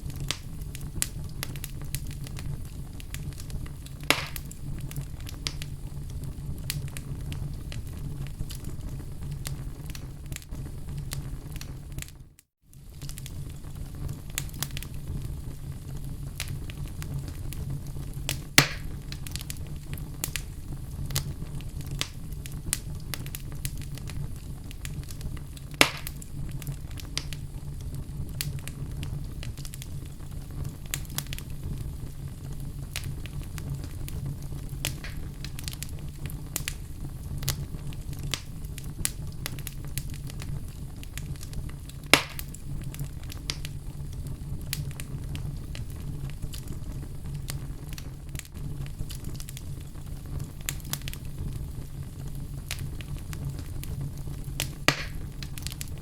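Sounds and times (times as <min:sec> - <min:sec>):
fire crackling: 0:00.0 - 0:56.0
loud fire pops: 0:00.0 - 0:56.0.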